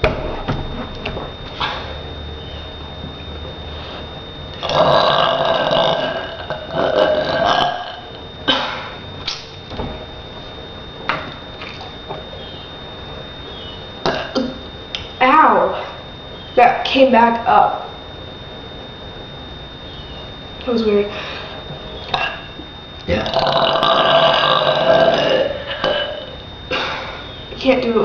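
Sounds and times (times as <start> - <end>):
person burping: 4.6 - 9.0, 14.0 - 14.6, 22.1 - 27.1.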